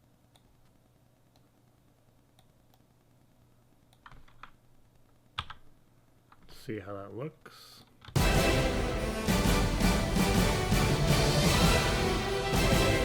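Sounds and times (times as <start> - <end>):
computer keyboard clicks: 3.9 - 4.6, 5.4 - 5.7.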